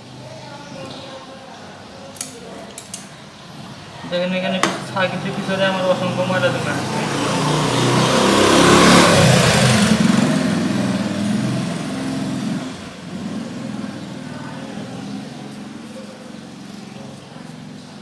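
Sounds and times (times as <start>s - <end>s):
vehicle engine passing by: 4.8s - 18.0s.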